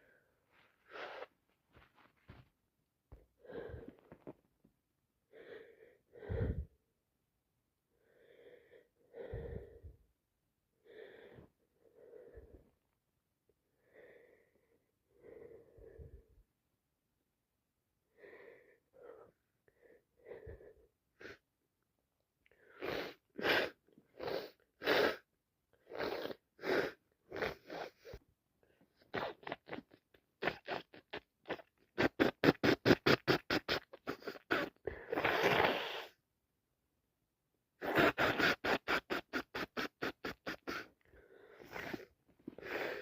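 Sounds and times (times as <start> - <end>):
woman sniffling: 0.0 - 1.4, 37.8 - 43.0.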